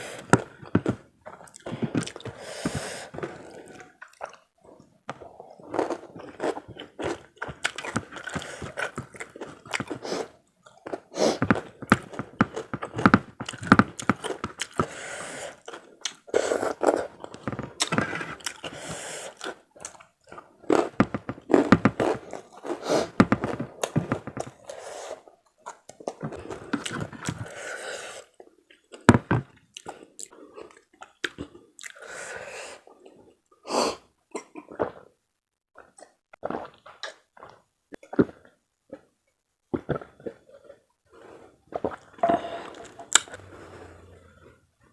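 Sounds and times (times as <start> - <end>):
person crunching and chewing food: 0.0 - 32.2, 35.8 - 39.1.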